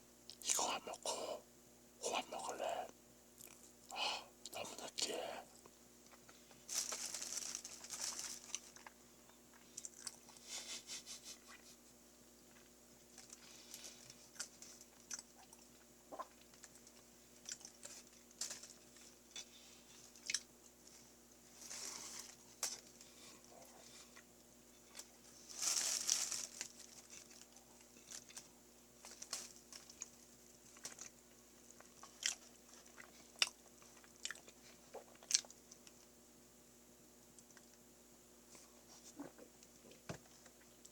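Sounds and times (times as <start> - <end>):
person chewing: 2.4 - 5.3, 8.4 - 10.7, 12.4 - 20.5, 29.8 - 36.0.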